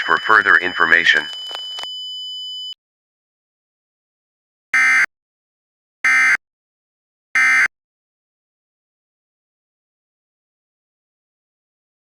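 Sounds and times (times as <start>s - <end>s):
steady high electronic tone: 0.0s - 1.8s
alert data bursts: 0.0s - 1.9s.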